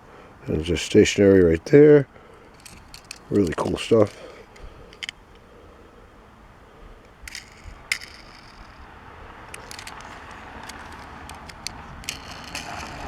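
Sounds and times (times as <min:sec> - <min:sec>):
toy truck clicking and rattling: 0:02.5 - 0:05.2, 0:07.1 - 0:13.0.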